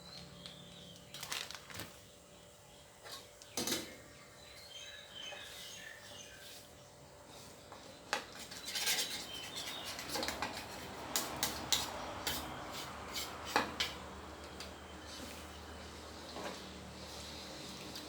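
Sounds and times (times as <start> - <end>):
utensil clinking and scraping pot: 7.4 - 14.6.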